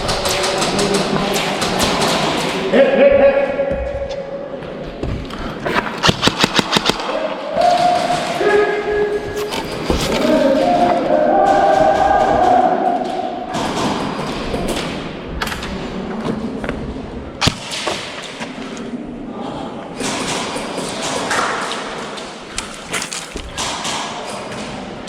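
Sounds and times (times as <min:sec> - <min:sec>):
sharp crack: 0:06.0 - 0:07.2.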